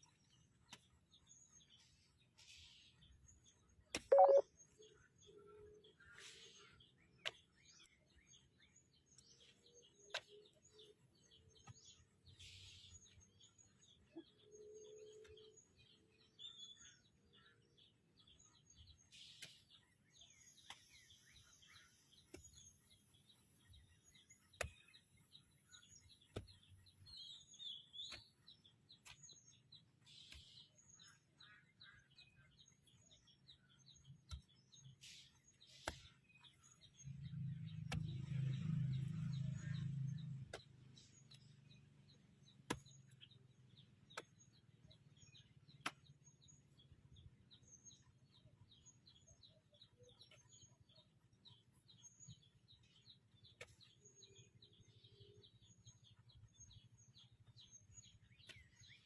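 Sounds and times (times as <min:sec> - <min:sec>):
faint bird chirps: 0:00.0 - 0:41.8.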